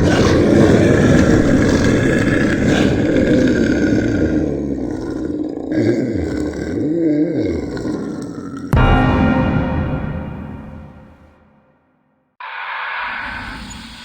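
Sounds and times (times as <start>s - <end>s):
low wavering growl: 0.0s - 8.8s
monster roaring: 0.0s - 8.9s.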